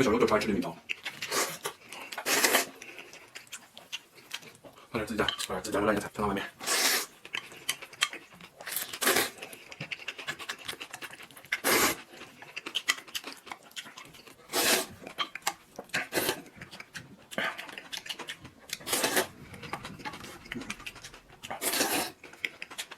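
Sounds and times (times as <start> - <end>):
chewing: 0.0 - 22.9
person slurping noodles: 1.2 - 2.8, 6.6 - 7.1, 8.7 - 9.5, 11.6 - 12.1, 14.5 - 15.0, 15.9 - 16.6, 18.7 - 22.2.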